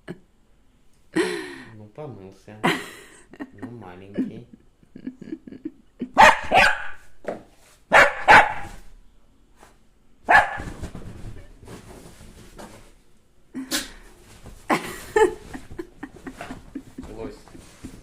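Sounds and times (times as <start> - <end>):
dog barking: 6.2 - 7.1, 7.9 - 8.8, 10.3 - 10.7.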